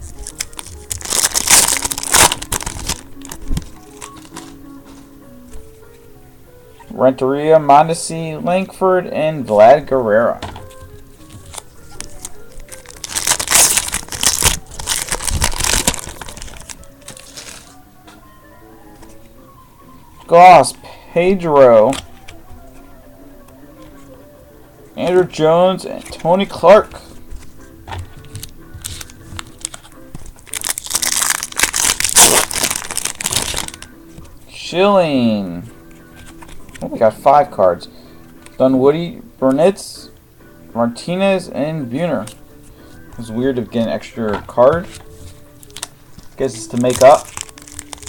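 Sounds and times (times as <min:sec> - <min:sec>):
wrapper crinkling and tearing: 0:00.0 - 0:04.6, 0:10.7 - 0:17.8, 0:28.1 - 0:34.0, 0:44.9 - 0:48.0
faint background music: 0:00.0 - 0:48.0
cards clicking: 0:10.6 - 0:18.2, 0:35.9 - 0:36.9, 0:44.3 - 0:48.0.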